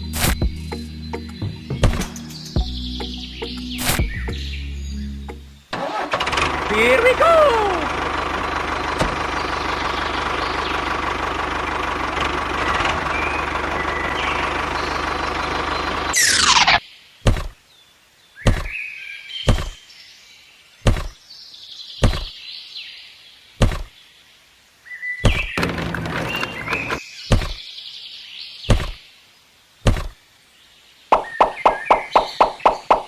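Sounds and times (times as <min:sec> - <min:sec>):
sharp knocks: 0:01.8 - 0:02.4, 0:17.2 - 0:17.6, 0:18.5 - 0:18.7, 0:19.5 - 0:19.8, 0:20.8 - 0:21.2, 0:22.0 - 0:22.3, 0:23.6 - 0:23.9, 0:27.3 - 0:27.6, 0:28.7 - 0:29.0, 0:29.8 - 0:30.2.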